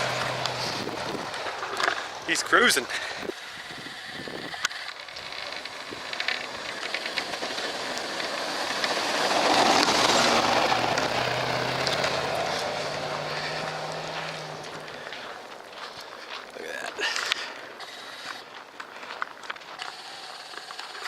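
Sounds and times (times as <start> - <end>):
snow rushing off plow blade: 0.0 - 15.5
truck engine hum: 0.0 - 21.0.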